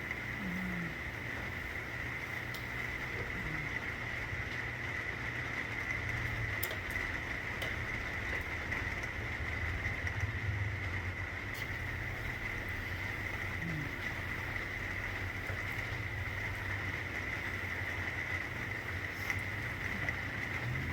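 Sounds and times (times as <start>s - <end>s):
raindrop ticks: 0.0s - 20.9s
steady rain hiss: 0.0s - 20.9s
low rumble: 7.8s - 20.9s.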